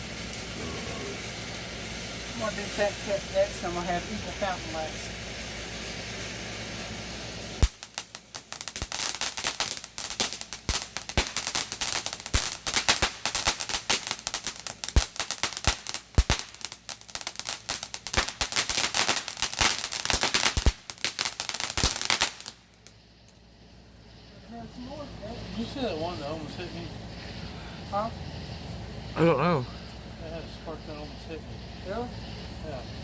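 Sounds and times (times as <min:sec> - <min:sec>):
firework bangs: 0:00.0 - 0:23.4
firework crackling and popping: 0:00.0 - 0:28.8
firework hissing: 0:00.0 - 0:33.0.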